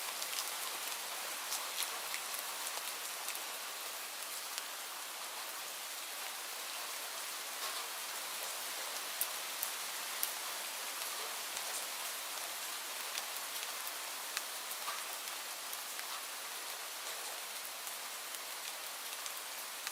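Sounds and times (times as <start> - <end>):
light rain hiss: 0.0 - 19.9
raindrops ticking on surface: 0.0 - 19.9.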